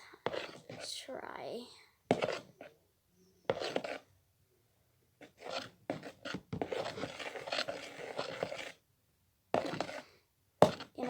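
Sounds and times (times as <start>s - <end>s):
utensil scraping against bowl: 0.2s - 1.0s, 2.1s - 2.7s, 3.5s - 4.1s, 5.2s - 8.8s, 9.6s - 11.0s
utensil stirring slime in bowl: 0.2s - 1.1s, 2.1s - 2.7s, 3.5s - 4.1s, 5.2s - 8.8s, 9.6s - 11.0s.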